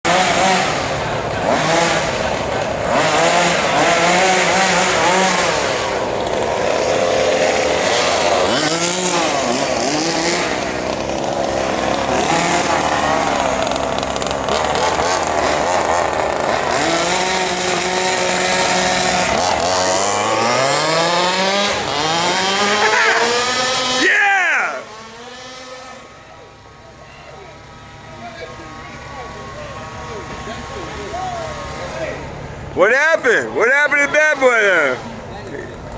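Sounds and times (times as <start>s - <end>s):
remote-control car motors revving: 0.1s - 35.7s.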